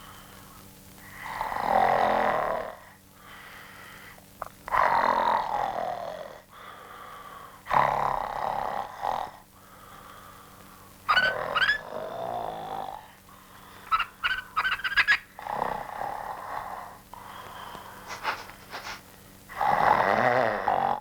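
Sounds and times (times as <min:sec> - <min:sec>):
cartoon snoring: 0:01.2 - 0:02.8, 0:04.7 - 0:06.5, 0:07.7 - 0:09.4, 0:11.1 - 0:13.2, 0:15.4 - 0:17.0, 0:19.5 - 0:21.0.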